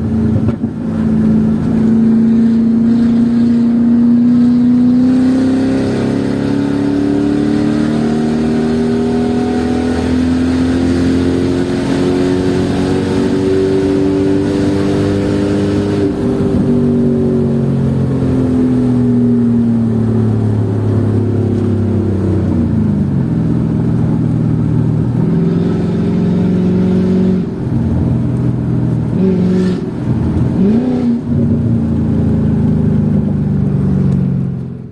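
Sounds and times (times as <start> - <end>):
car engine accelerating: 0.0 - 34.9.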